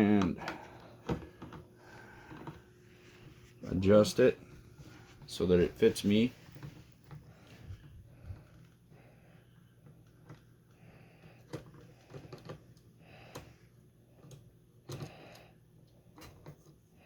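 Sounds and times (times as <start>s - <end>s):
soft handling noise: 0.0s - 17.0s
small clicks and light knocks: 9.7s - 16.8s.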